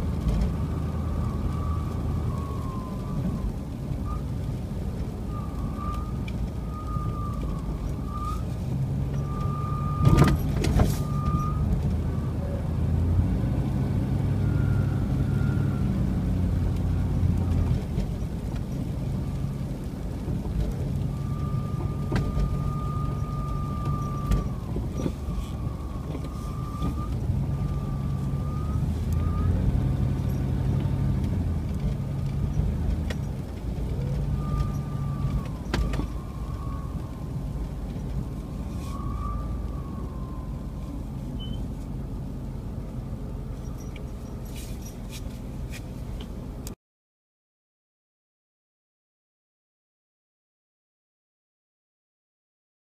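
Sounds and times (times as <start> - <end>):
car engine and road rumble: 0.0 - 46.8.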